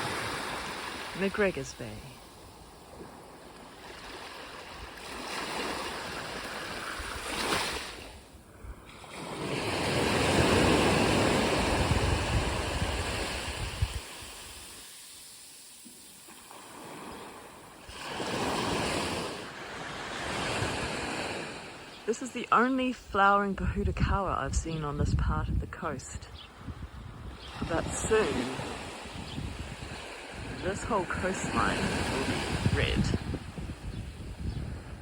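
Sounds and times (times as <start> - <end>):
wind rumbling on microphone: 0.0 - 14.8, 23.0 - 35.0
surf washing onto beach: 0.0 - 22.2, 27.2 - 35.0.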